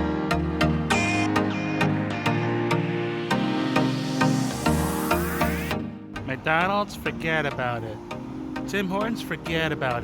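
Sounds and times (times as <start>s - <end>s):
background music with steady beat: 0.0s - 10.0s.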